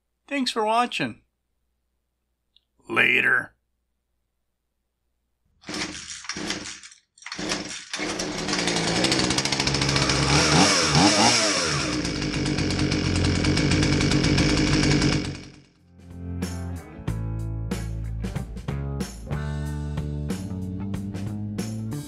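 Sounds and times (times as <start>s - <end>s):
chainsaw starting and revving: 5.6s - 15.8s.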